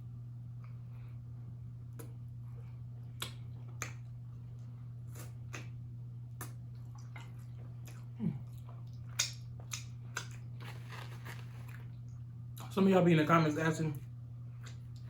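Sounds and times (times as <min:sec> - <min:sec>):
steady low hum: 0:00.0 - 0:15.0
person eating with wet smacks: 0:01.8 - 0:12.7, 0:14.5 - 0:15.0.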